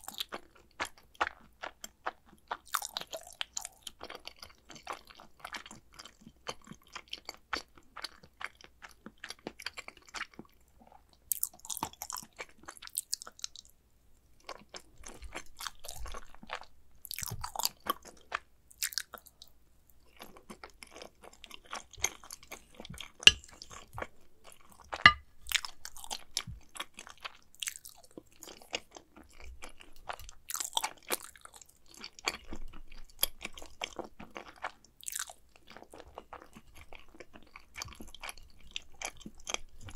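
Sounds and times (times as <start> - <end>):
wet chewing mouth sounds: 14.4 - 39.9.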